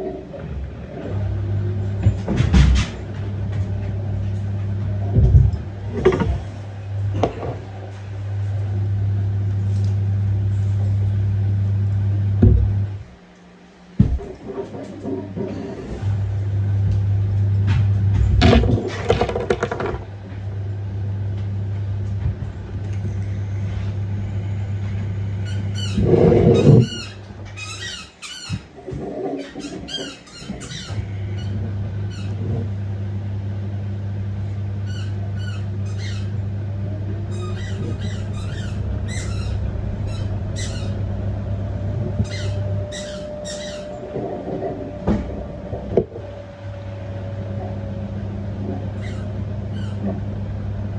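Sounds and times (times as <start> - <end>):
washing machine humming: 0.0 - 50.9
high squeaks and clicks: 6.0 - 6.5, 25.5 - 32.6, 34.9 - 36.4, 37.3 - 41.1, 42.0 - 45.1, 49.0 - 50.2.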